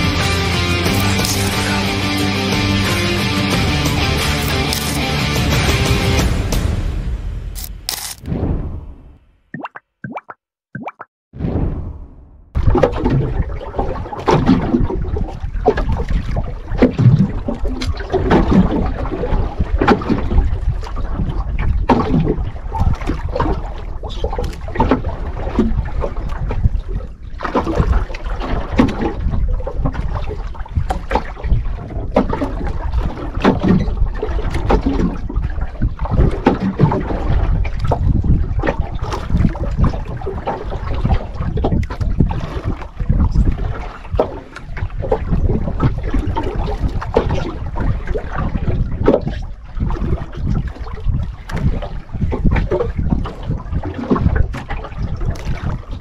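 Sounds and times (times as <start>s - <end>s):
wind noise on microphone: 11.4s - 56.0s
water splashing against boat: 12.6s - 56.0s.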